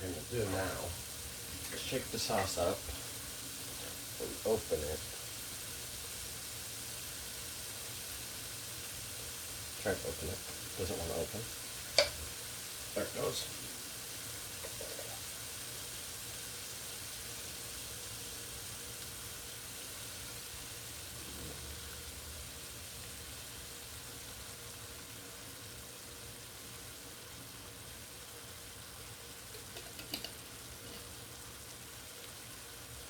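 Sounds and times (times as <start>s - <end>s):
chicken sizzling in frying pan: 0.0s - 33.0s.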